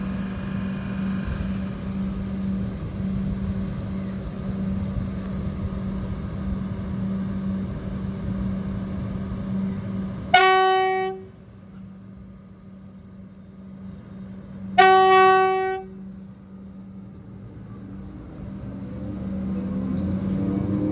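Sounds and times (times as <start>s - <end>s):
electric train rumble and hum: 0.0s - 20.9s
train horn blasts: 9.6s - 11.4s, 14.7s - 16.0s.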